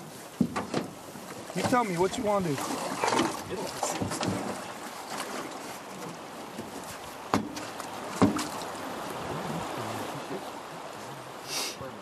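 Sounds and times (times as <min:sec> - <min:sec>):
river water rushing: 0:00.0 - 0:12.0
knocks against boat: 0:00.3 - 0:08.7.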